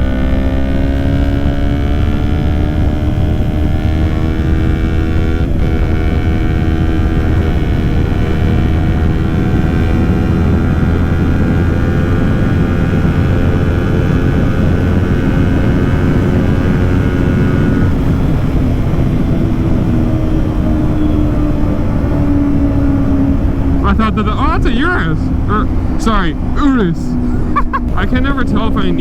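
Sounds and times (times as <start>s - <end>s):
motorcycle engine cruising: 0.0s - 29.0s
wind rushing on microphone: 0.0s - 29.0s.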